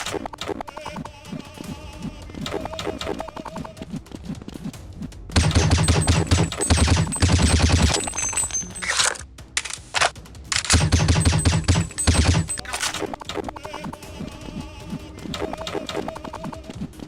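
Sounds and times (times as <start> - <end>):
background music: 0.0 - 17.0
automatic gunfire: 5.4 - 13.0.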